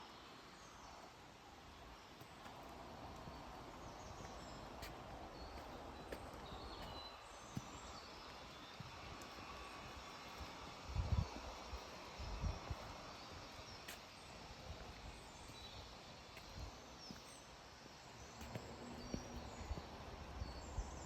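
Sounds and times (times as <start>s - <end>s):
steady background hiss: 0.0s - 21.0s
birds chirping: 12.1s - 21.0s.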